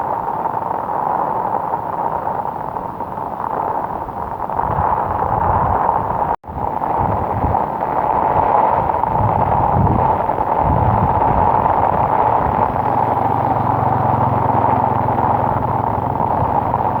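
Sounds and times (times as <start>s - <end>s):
heavy rain and wind on microphone: 0.0s - 17.0s
steady low hum: 7.0s - 17.0s.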